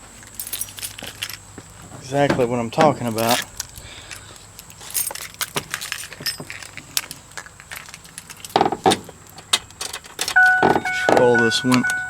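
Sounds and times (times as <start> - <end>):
keys jangling and clinking: 0.3 - 1.4, 3.1 - 8.6.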